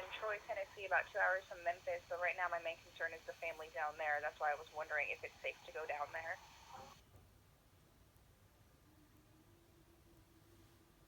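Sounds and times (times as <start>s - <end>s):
low steady hum: 0.0s - 6.4s
faint hiss: 0.0s - 7.2s.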